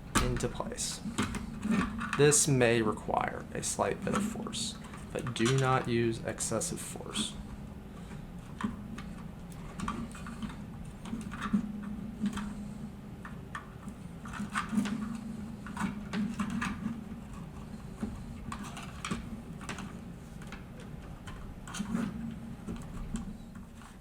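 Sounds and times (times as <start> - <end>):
low steady hum: 0.0 - 24.0
plastic clicks and scrapes: 13.6 - 24.0.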